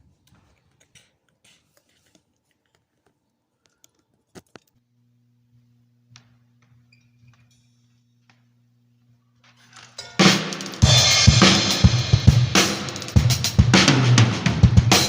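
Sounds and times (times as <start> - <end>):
low electrical hum: 0.0 - 10.2.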